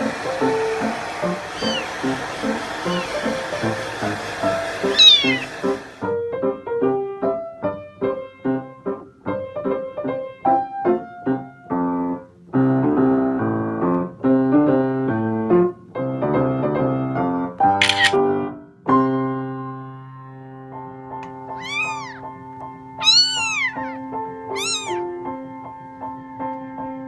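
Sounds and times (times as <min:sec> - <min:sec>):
kitten meowing: 0:01.2 - 0:03.5, 0:04.5 - 0:05.9, 0:17.8 - 0:18.2, 0:21.5 - 0:22.2, 0:23.0 - 0:25.1.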